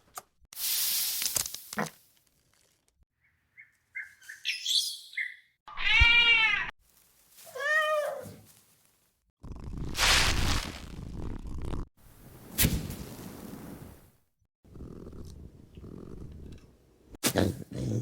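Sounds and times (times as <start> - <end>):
meow-like cries: 5.7 - 6.7, 7.5 - 8.4.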